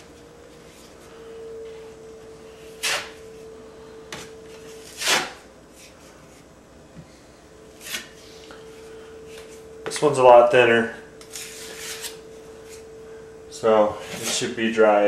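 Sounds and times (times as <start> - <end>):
faint steady hum: 0.0 - 15.0
drywall tool scraping: 2.5 - 3.4, 4.5 - 6.4, 11.3 - 12.8, 14.0 - 14.5.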